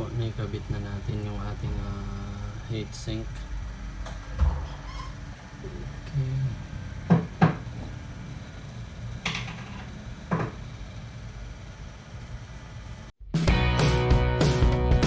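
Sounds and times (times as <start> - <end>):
hard parts knocking and clicking: 9.2 - 10.6.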